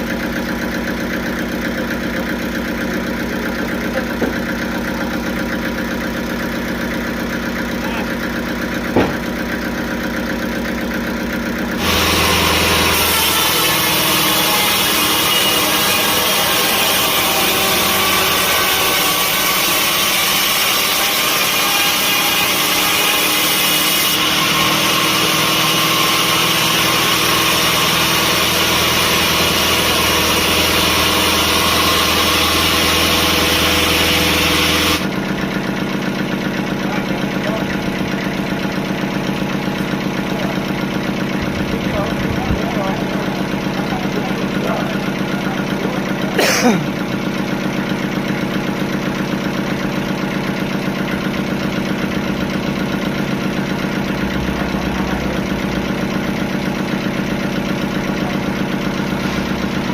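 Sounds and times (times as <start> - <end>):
sawmill machinery humming: 0.0 - 59.9
machine knocks: 8.9 - 9.4.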